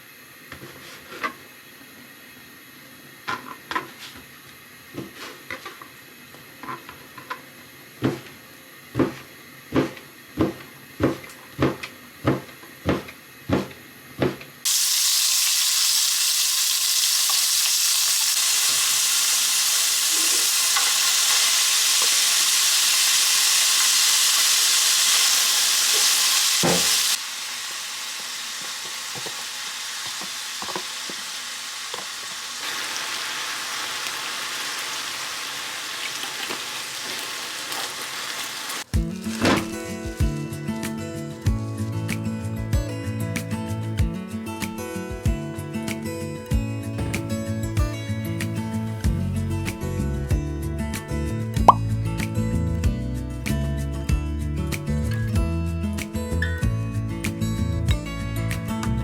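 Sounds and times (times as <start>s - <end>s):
food sizzling in a pan: 14.7s - 40.2s.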